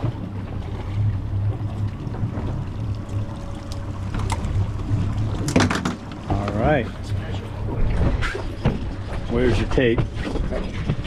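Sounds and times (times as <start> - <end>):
boat engine low rumble: 0.0 - 11.0
water noise: 0.0 - 11.0
wind: 0.0 - 11.0
knocks and clatters: 5.3 - 6.6, 7.8 - 11.0.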